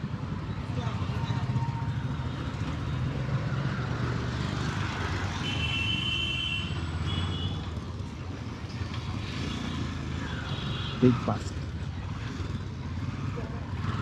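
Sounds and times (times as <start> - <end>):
motorcycle engine and road rumble: 0.0 - 14.0
vehicle horn: 5.4 - 7.6.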